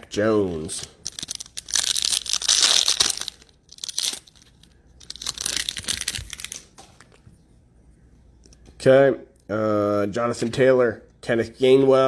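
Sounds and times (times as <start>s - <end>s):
plastic wrapper tearing and crinkling: 0.5s - 6.8s.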